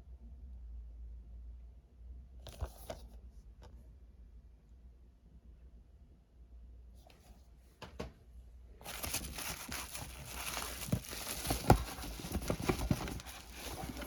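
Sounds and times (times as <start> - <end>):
packaging knocks and clicks: 8.8 - 14.0
wrapping crinkling and rustling: 8.8 - 14.0.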